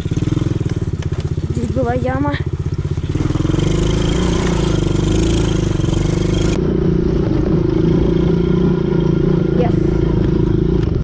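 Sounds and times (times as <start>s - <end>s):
machine rattling over rough ground: 0.0s - 5.4s
quad bike engine running: 0.0s - 11.0s.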